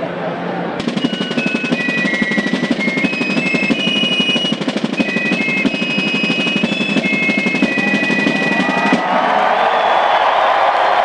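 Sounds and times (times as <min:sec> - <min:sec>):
high held-note melody: 0:00.8 - 0:08.8
rapid drumming: 0:00.8 - 0:09.8.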